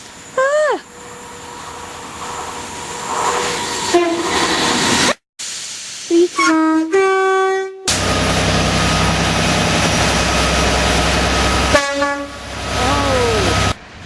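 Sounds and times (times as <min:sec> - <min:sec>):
train passing close by: 0:00.0 - 0:05.2, 0:07.9 - 0:14.0
two-tone train horn: 0:03.9 - 0:04.2, 0:06.4 - 0:07.9, 0:11.7 - 0:12.4.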